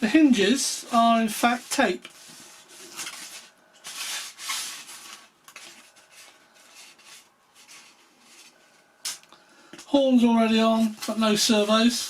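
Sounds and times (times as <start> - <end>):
foam wing rubbing and rustling: 0.9 - 8.6.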